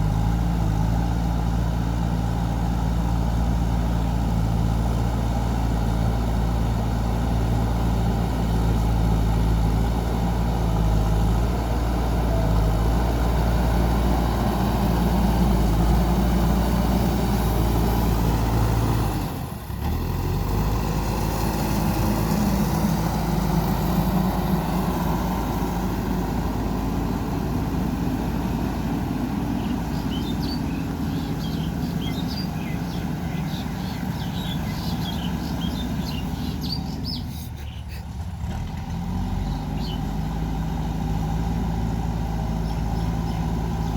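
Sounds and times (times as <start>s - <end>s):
diesel engine running: 0.0s - 43.9s.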